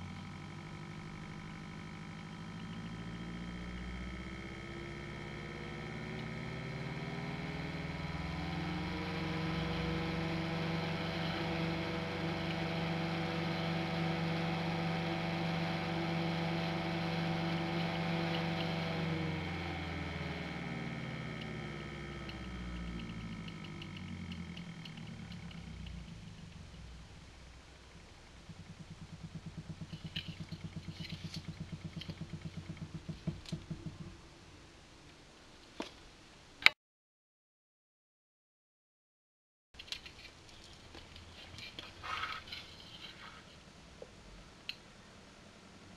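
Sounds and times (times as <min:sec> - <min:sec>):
computer fan motor hum: 0:00.0 - 0:35.2.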